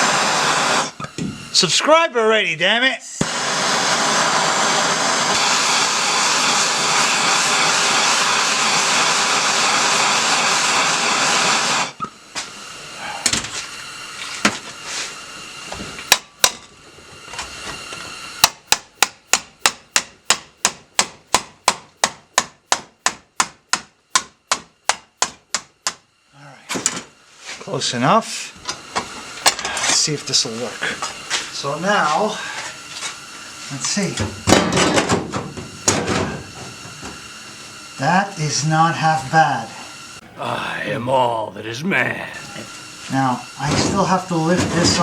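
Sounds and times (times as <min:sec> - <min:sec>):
torch flame hissing: 0:00.0 - 0:01.8, 0:03.2 - 0:16.1
hammer on steel sheet: 0:18.4 - 0:25.4.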